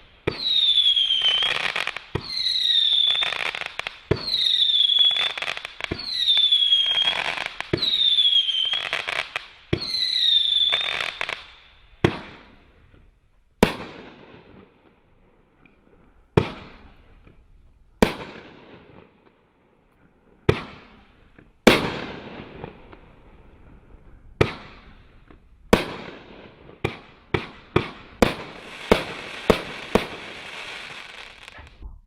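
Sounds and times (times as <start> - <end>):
fireworks crackling hiss: 0.0 - 13.1, 26.9 - 32.0.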